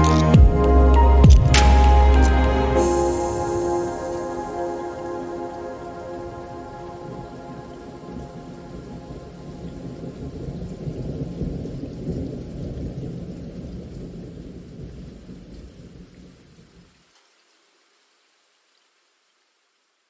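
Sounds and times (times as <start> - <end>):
faint hiss: 0.0 - 12.8
rain: 0.0 - 20.0.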